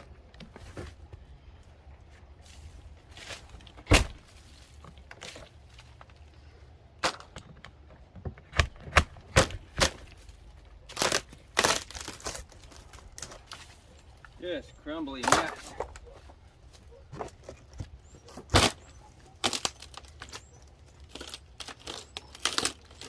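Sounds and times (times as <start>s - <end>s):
wood crunching and breaking: 2.9s - 7.6s, 8.4s - 14.4s, 15.0s - 16.1s, 17.1s - 23.0s.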